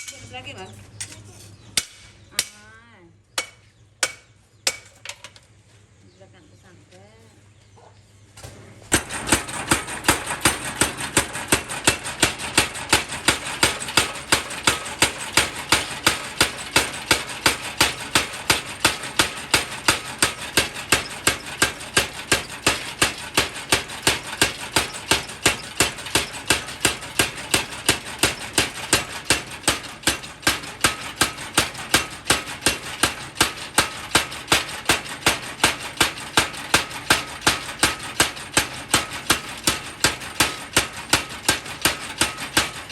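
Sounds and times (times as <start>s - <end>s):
power hammer striking steel: 1.8s - 2.6s, 3.4s - 5.0s, 8.9s - 42.9s
motor running: 8.9s - 41.0s.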